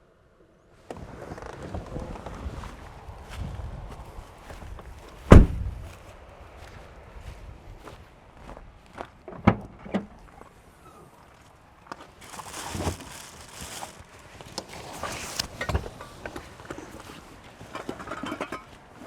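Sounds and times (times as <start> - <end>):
sharp knocks and thuds: 5.3 - 5.8
rustling: 12.0 - 17.2.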